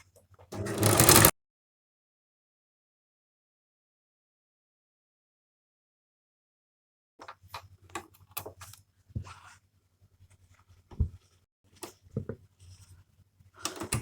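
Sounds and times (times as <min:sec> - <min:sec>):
sewing machine clicks and knocks: 0:00.5 - 0:01.3.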